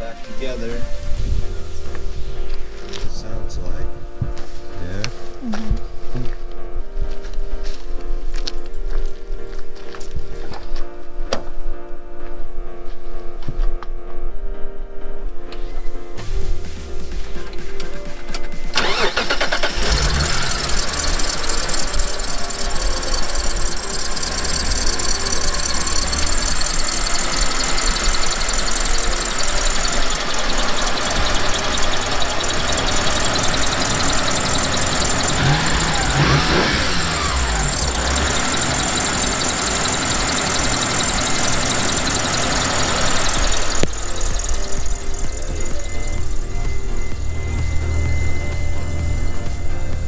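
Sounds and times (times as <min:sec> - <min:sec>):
car engine idling: 0:18.6 - 0:50.0
high-pitched belt squeak: 0:18.8 - 0:50.0.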